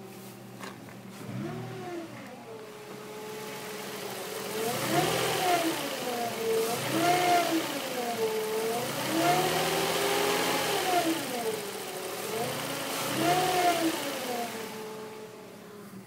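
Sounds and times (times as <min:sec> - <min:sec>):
car engine revving: 0:01.1 - 0:16.0.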